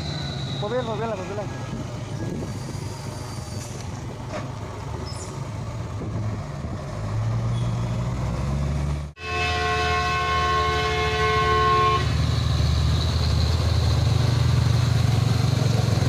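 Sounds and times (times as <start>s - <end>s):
truck diesel engine rumbling: 0.0s - 16.0s
multi-tone air horn: 9.2s - 12.3s.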